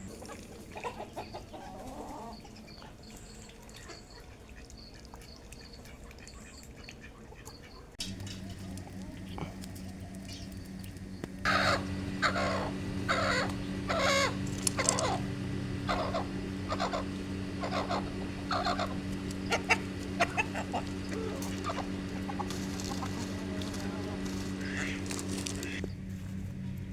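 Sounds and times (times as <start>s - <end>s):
chickens clucking: 0.0s - 25.9s
low hum: 8.0s - 26.9s.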